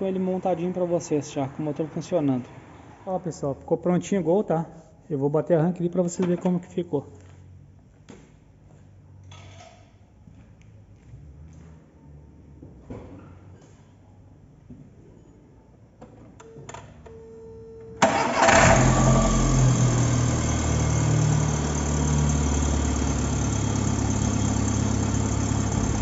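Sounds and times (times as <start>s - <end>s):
car engine starting and idling: 18.0s - 26.0s.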